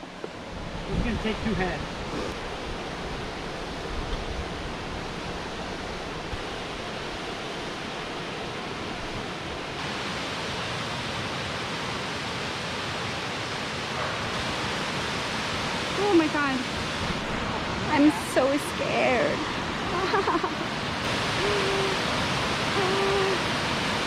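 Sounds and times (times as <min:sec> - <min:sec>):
waterfall rushing: 0:04.8 - 0:24.0.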